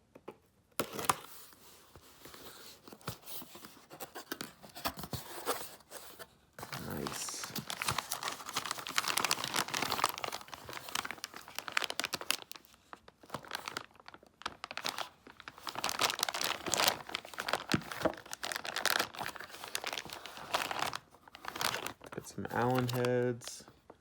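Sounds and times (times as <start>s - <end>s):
packaging crinkling: 6.6s - 23.5s.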